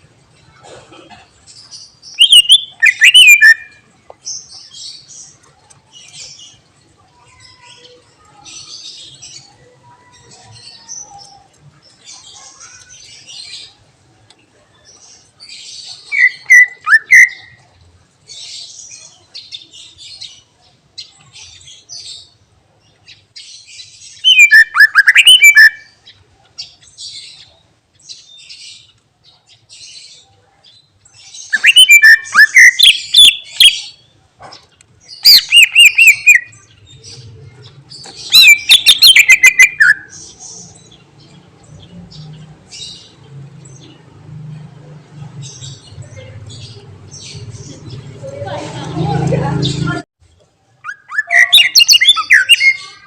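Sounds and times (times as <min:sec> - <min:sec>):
bird twittering: 0:02.1 - 0:03.8, 0:16.0 - 0:17.6, 0:24.2 - 0:26.0, 0:31.5 - 0:34.0, 0:35.2 - 0:37.2, 0:37.9 - 0:41.0, 0:50.8 - 0:53.0
bird sweeping whistles: 0:31.6 - 0:33.4.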